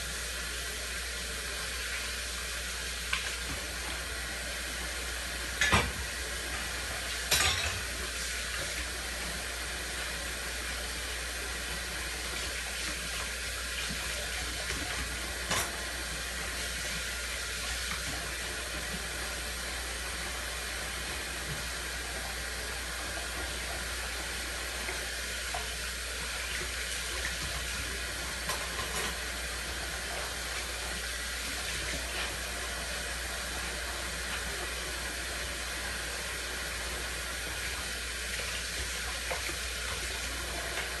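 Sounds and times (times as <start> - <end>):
tap running into sink: 5.6 - 6.2
dishes clinking: 7.3 - 7.9.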